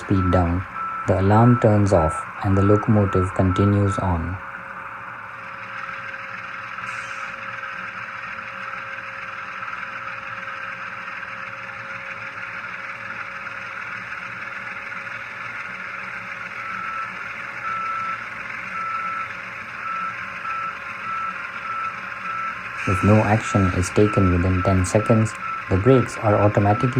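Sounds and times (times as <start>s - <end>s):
alarm beeping: 0.0s - 6.1s, 16.6s - 18.2s, 18.8s - 26.9s
diesel engine sound from small speaker: 0.0s - 26.9s.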